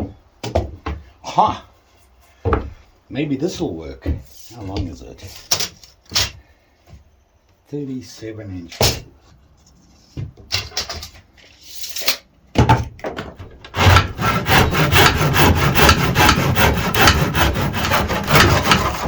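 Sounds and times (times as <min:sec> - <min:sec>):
hand saw cutting wood: 0:13.7 - 0:19.0
wooden strip knocking: 0:13.7 - 0:19.0.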